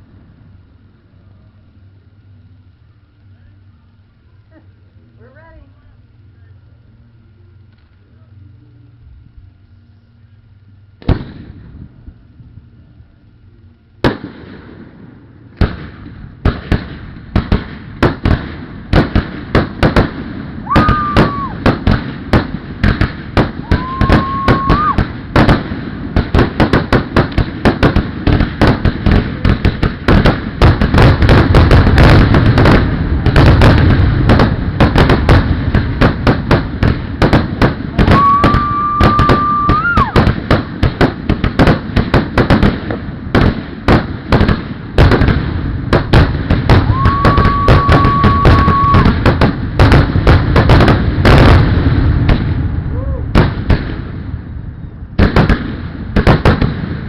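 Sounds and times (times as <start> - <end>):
fireworks booms and crackles: 11.0 - 12.2, 14.0 - 57.0
firework high whistle: 20.6 - 21.9, 23.4 - 25.6, 37.9 - 40.3, 46.7 - 49.3.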